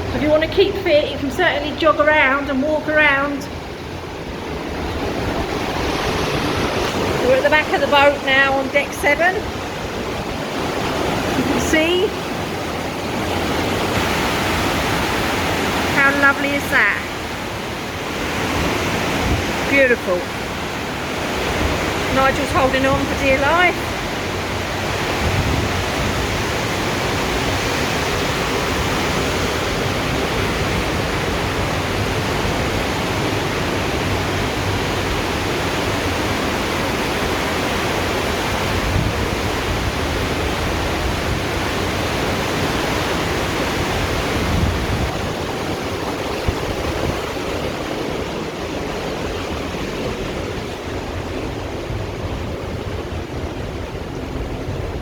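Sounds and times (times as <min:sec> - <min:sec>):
sea churning: 0:00.0 - 0:55.0
wind buffeting microphone: 0:00.0 - 0:55.0.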